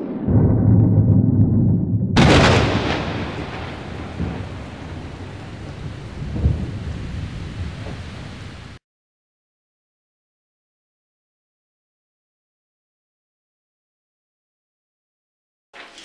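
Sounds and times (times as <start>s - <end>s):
thunder crash: 0.0s - 8.8s
thunder rumbling: 0.0s - 8.8s.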